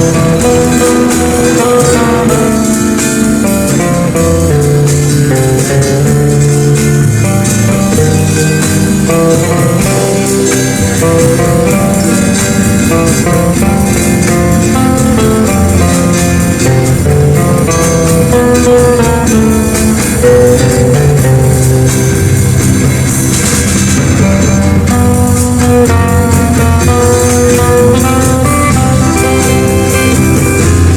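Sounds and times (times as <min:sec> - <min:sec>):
guitar-led instrumental music: 0:00.0 - 0:30.9.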